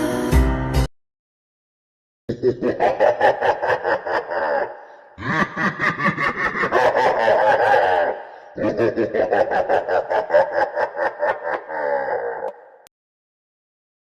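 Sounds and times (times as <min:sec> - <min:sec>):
person laughing: 0:02.3 - 0:12.8.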